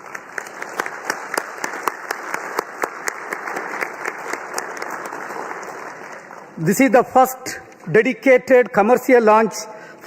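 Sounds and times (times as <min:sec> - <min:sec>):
crowd applauding: 0:00.0 - 0:06.6.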